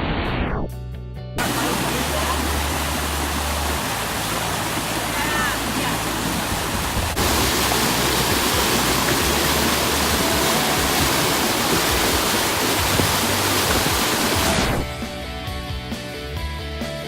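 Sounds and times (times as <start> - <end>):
loud steady rushing noise: 1.4 - 14.9.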